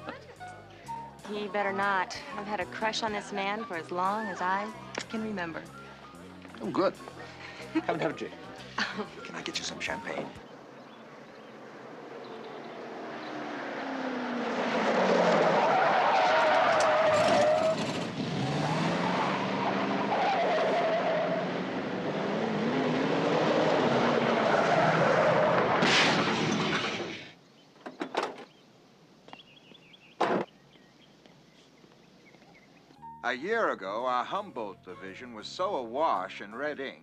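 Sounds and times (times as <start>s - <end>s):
tyres skidding: 0.0s - 28.6s
car engine revving: 11.4s - 26.3s.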